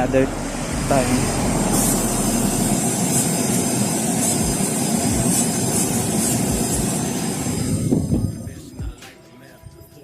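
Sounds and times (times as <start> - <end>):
car air blower drone: 0.0 - 10.0
aerosol spray hissing: 1.1 - 8.4.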